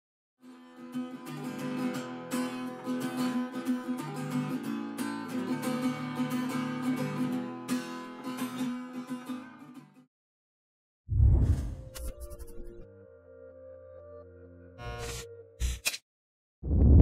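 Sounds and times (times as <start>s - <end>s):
acoustic guitar strummed and plucked: 0.4s - 10.0s.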